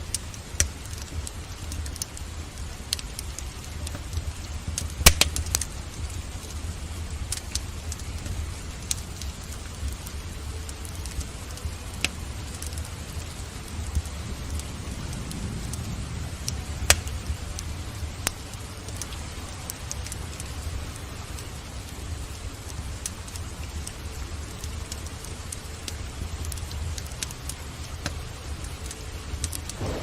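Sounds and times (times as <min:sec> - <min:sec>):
steady rain: 0:00.0 - 0:30.0
wood fire crackling: 0:00.0 - 0:30.0
sharp fire pops: 0:02.9 - 0:06.6, 0:10.8 - 0:19.1, 0:29.4 - 0:30.0
low rumble: 0:29.7 - 0:30.0.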